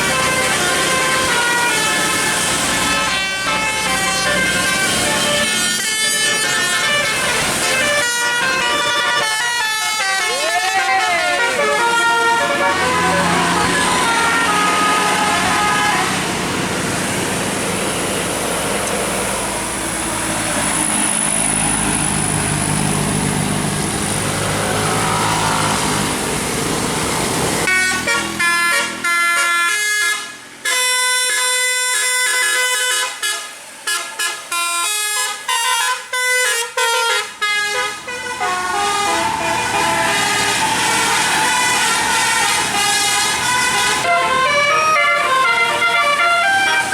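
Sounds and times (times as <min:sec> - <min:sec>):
multi-tone air horn melody: 0:00.0 - 0:16.4, 0:27.7 - 0:46.9
bus engine: 0:00.0 - 0:46.9
traffic noise: 0:00.0 - 0:46.9.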